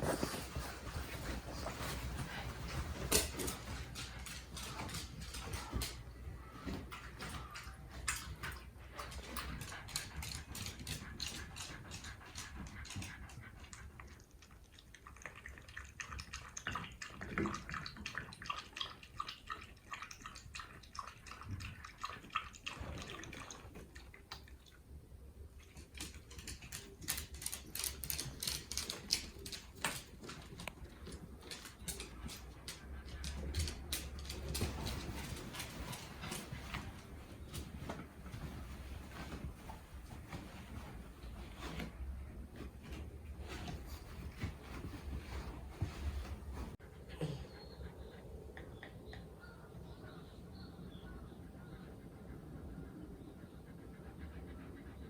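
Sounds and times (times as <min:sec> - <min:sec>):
dog claws clicking on floor: 0:25.8 - 0:38.0.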